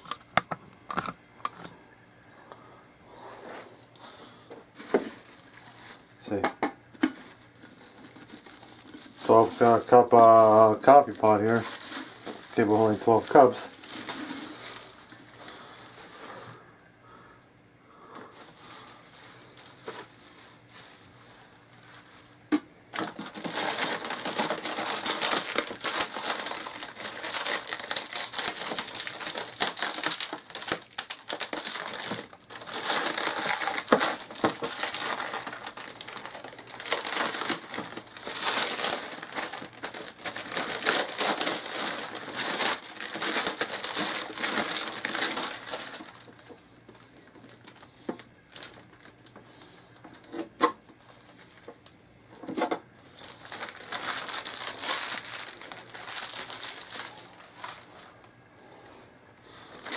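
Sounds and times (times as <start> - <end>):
packaging crinkling and rustling: 4.7 - 16.1, 18.3 - 58.4, 59.5 - 59.9.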